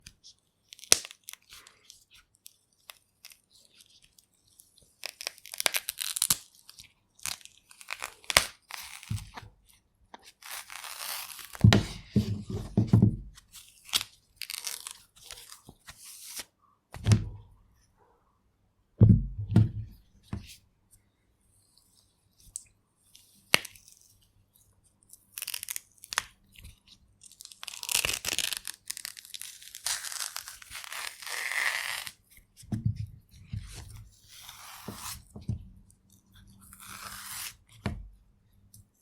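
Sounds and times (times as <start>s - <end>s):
banana peels snapping and tearing: 5.0s - 9.3s, 13.8s - 15.6s, 25.3s - 26.4s, 27.2s - 32.2s.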